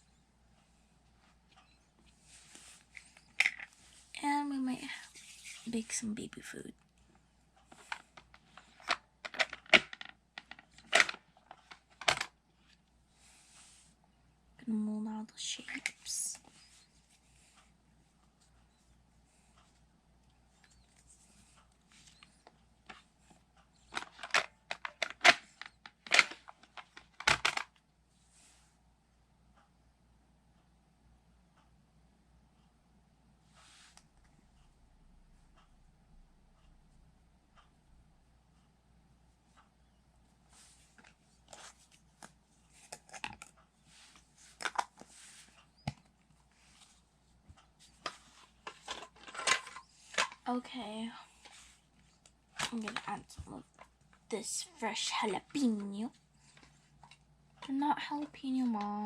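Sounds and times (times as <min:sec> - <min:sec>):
plastic toy pieces clicking: 0:23.9 - 0:27.7.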